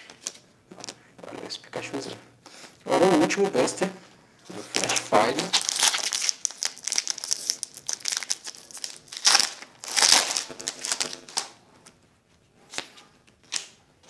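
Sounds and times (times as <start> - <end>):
foil wrapper crinkling and tearing: 4.6 - 11.6.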